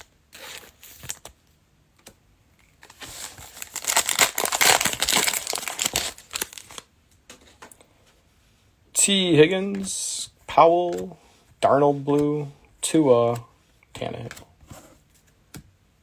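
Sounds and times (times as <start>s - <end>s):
plastic wrapper crinkling: 2.8s - 6.8s.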